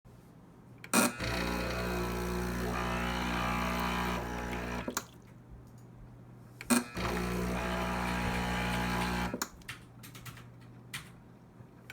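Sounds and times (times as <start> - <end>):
espresso machine pump buzzing: 1.1 - 5.0, 6.7 - 9.4.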